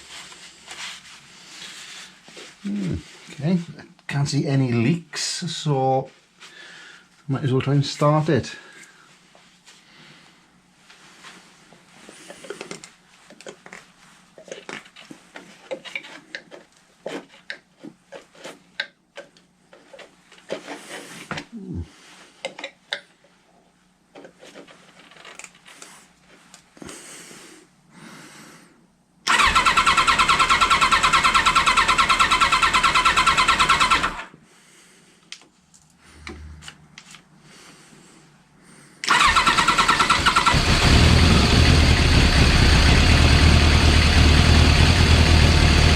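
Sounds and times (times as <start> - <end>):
motorcycle starter cranking: 29.3 - 34.3, 39.1 - 45.9
motorcycle engine firing: 39.1 - 45.9.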